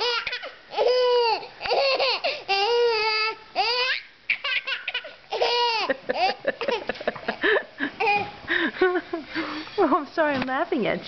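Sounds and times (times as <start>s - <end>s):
baby laughing: 0.0s - 8.4s.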